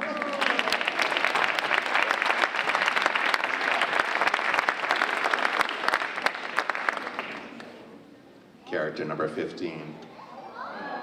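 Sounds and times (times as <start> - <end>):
children applauding: 0.0 - 7.6.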